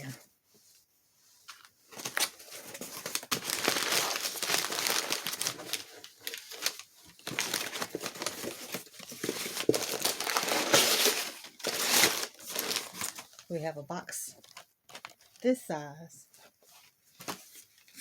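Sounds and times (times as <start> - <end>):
packing paper crinkling: 1.5 - 13.5, 14.4 - 15.5.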